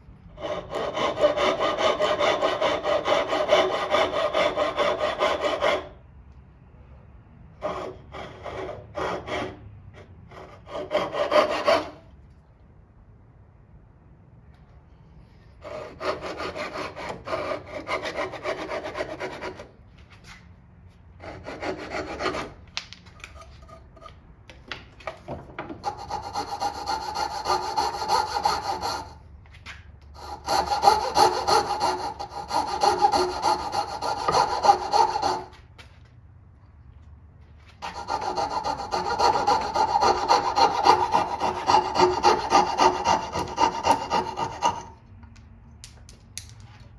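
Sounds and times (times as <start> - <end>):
hand saw cutting wood: 0.3 - 6.0, 7.6 - 12.0, 15.6 - 19.7, 21.2 - 22.6, 25.8 - 29.2, 30.2 - 35.6, 37.8 - 45.0.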